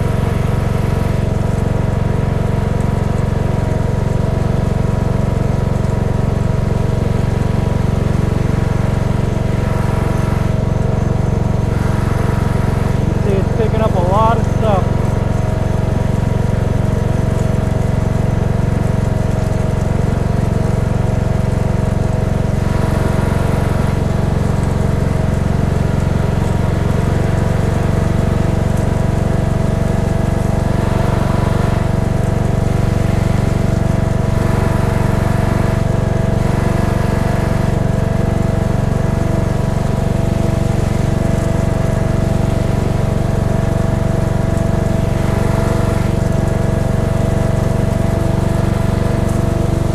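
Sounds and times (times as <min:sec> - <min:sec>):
constant whine: 0:00.0 - 0:49.9
riding lawn tractor engine: 0:00.0 - 0:49.9.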